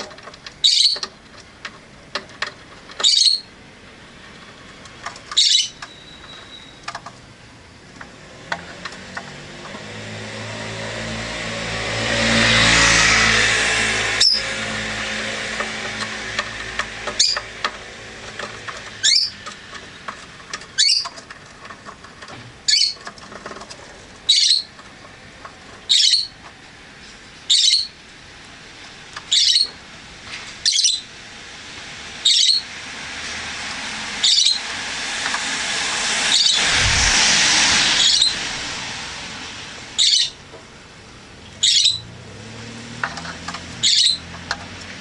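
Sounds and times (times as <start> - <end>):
steady background noise: 0.0 - 45.0
lovebird high-pitched calls: 0.6 - 1.0, 3.0 - 3.5, 5.4 - 6.8, 14.2 - 14.5, 17.2 - 17.5, 19.0 - 19.4, 20.8 - 21.1, 22.7 - 23.0, 24.3 - 24.7, 25.9 - 26.4, 27.5 - 28.0, 29.3 - 29.8, 30.6 - 31.1, 32.2 - 32.7, 34.2 - 34.6, 36.3 - 36.7, 37.9 - 38.4, 40.0 - 40.4, 41.6 - 42.1, 43.8 - 44.3.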